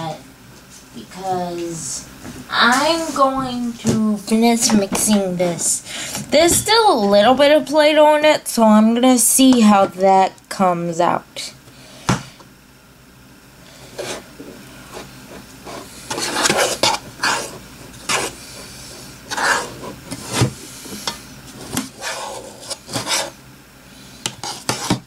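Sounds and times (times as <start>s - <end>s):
utensil stirring and scraping slime: 13.8s - 23.4s, 24.2s - 25.0s.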